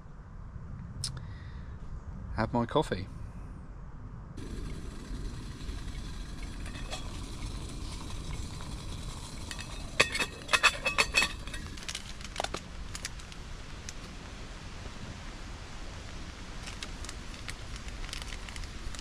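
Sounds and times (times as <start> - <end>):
low outdoor rumble: 0.0 - 19.0.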